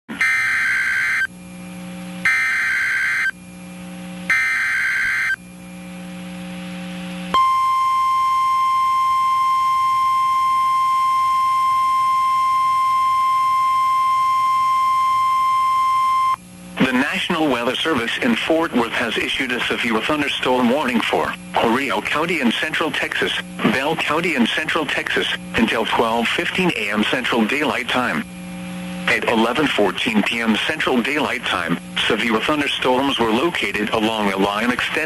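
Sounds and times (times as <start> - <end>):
raspy data tone bursts: 0.1 - 1.4, 2.2 - 3.4, 4.2 - 5.4
steady warning alarm tone: 0.1 - 1.4, 2.2 - 3.4, 4.2 - 5.6, 7.3 - 16.5
radio hiss: 16.6 - 35.0.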